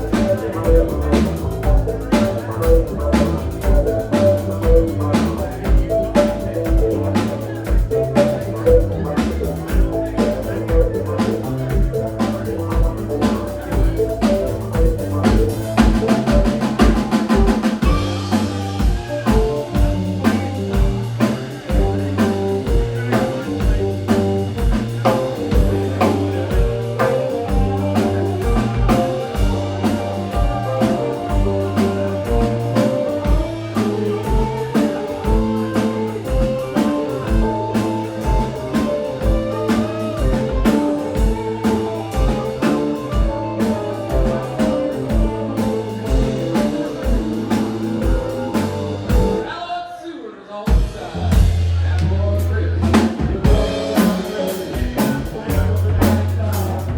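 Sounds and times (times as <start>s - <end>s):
bass guitar: 0.0s - 49.5s, 50.7s - 56.9s
electric guitar: 0.0s - 49.5s
drum kit beat: 0.0s - 49.6s, 50.7s - 56.9s
keyboards: 0.0s - 49.8s, 50.6s - 56.9s.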